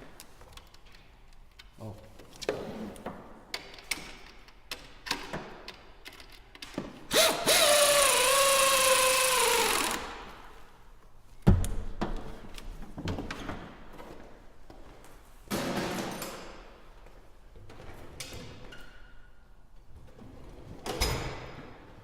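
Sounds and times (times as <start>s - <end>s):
metallic clicks and rattles of tools: 3.6s - 6.8s
cordless power tool motor whining: 7.1s - 10.2s.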